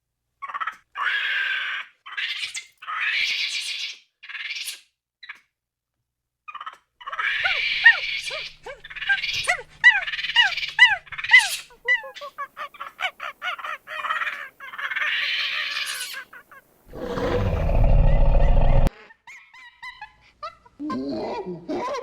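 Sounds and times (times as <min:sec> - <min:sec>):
loud rough monkey call: 0:16.9 - 0:18.9.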